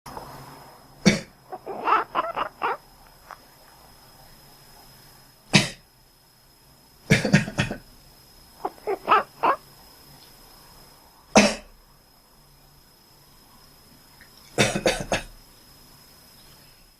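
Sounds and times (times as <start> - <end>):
cat meowing and chirping: 1.5 - 2.8, 8.6 - 9.6
person coughing: 7.1 - 7.8, 11.4 - 11.7, 14.6 - 15.3.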